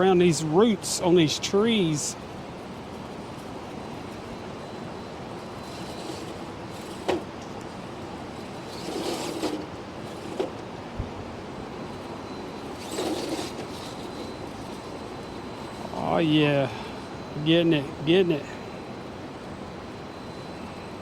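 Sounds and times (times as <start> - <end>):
steady background hiss: 0.0 - 21.0
electric motor whirring: 2.8 - 16.1.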